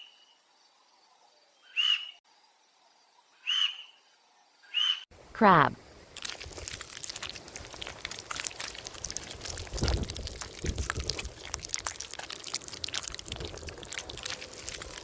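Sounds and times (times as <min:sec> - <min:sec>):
water trickling and splashing: 0:06.0 - 0:15.0
small clicks and crackles: 0:06.2 - 0:15.0.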